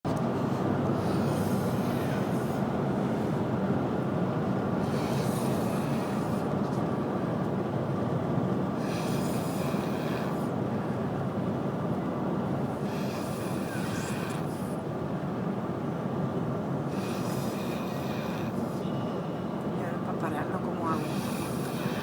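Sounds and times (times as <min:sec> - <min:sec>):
moving vehicle rumble: 0:00.1 - 0:22.0
girl snoring: 0:04.8 - 0:06.4, 0:08.8 - 0:10.4, 0:12.8 - 0:14.6, 0:16.9 - 0:18.6, 0:20.9 - 0:22.0.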